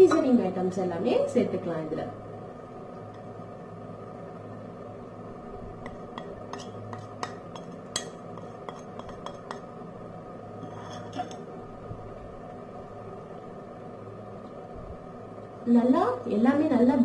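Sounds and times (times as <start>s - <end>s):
spoon scraping bowl: 5.9s - 9.7s, 10.6s - 11.4s
spoon clinking against bowls: 6.2s - 8.2s.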